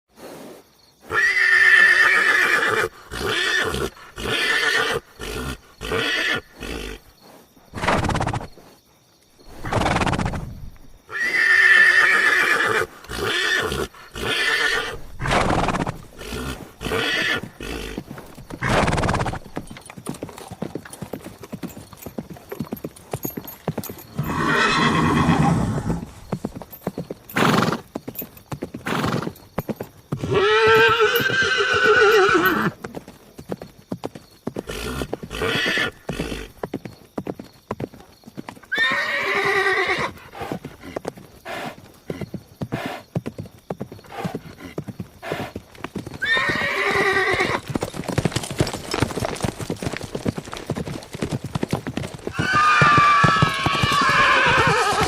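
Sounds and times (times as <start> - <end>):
horse neighing: 1.1 - 7.1, 9.5 - 10.5, 11.1 - 19.7, 24.1 - 26.2, 30.2 - 32.8, 34.6 - 36.6, 38.7 - 40.6, 46.2 - 47.8, 52.3 - 55.0
hoof clops: 15.6 - 24.7, 25.8 - 55.0.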